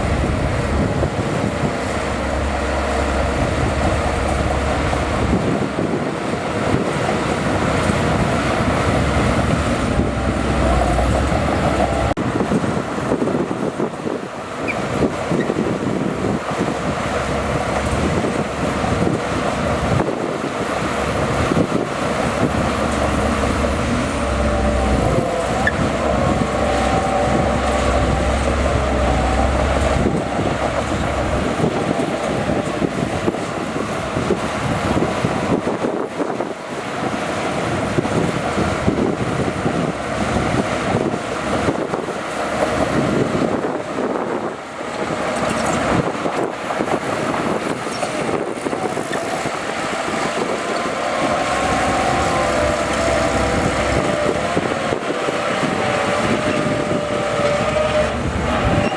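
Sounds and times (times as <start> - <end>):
bulldozer diesel engine running: 0.0 - 58.9
deep low rumble: 22.2 - 32.8.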